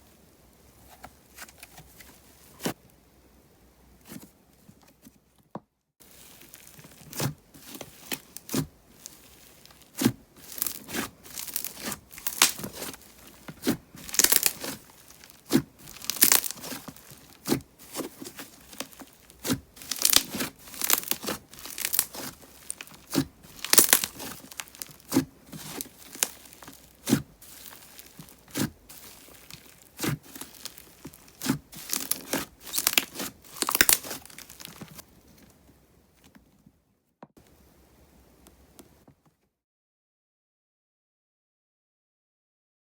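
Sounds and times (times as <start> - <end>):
slime squeezed by hand: 6.2 - 35.0.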